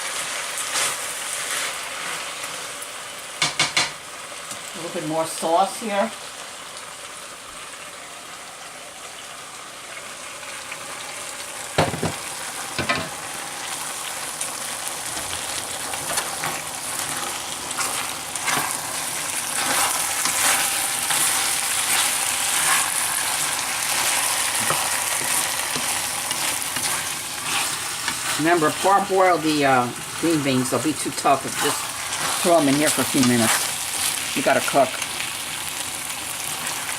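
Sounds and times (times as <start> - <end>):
food sizzling in a wok: 0.0 - 36.9
utensil knocking on wok: 3.4 - 4.0, 11.8 - 12.2.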